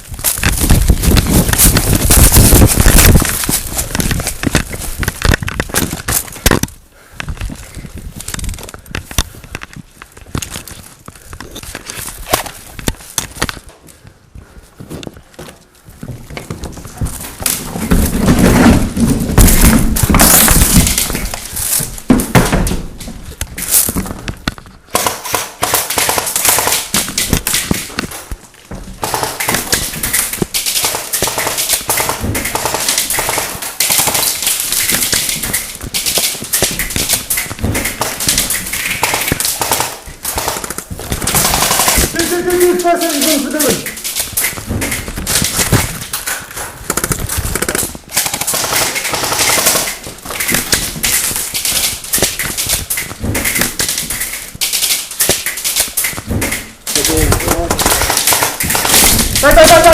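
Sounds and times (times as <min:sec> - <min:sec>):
airsoft guns firing: 0:17.3 - 0:22.9, 0:24.9 - 0:28.2, 0:29.0 - 0:59.9.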